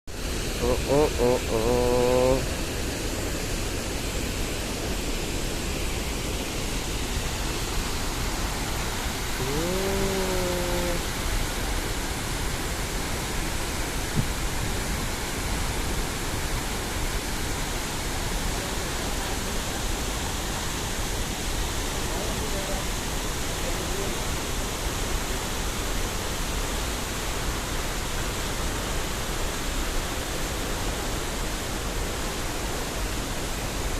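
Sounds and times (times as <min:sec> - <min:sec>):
waterfall roaring: 0:00.1 - 0:33.9
rising call: 0:09.2 - 0:11.1.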